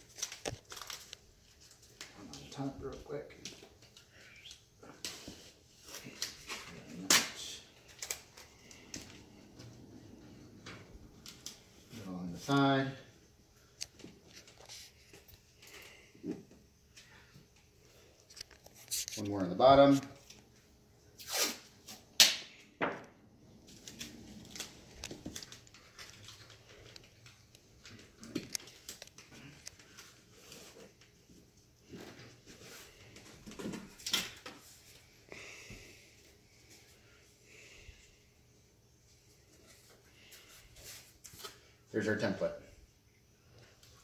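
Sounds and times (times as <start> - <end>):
tape crackling and ticking: 0.0 - 11.9, 23.0 - 31.6
tape ripping: 21.2 - 22.4.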